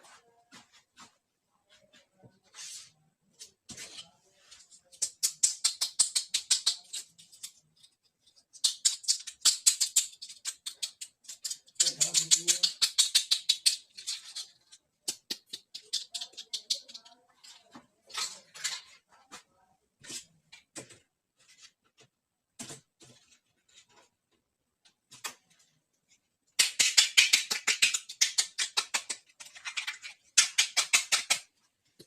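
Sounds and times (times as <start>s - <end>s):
small toy pieces clicking: 5.0s - 17.2s, 26.6s - 31.5s.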